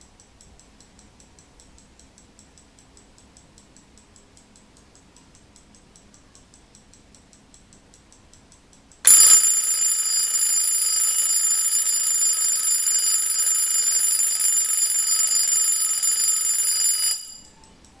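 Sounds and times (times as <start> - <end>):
alarm bell ringing: 9.1 - 17.7
alarm clock ticking: 9.1 - 18.0.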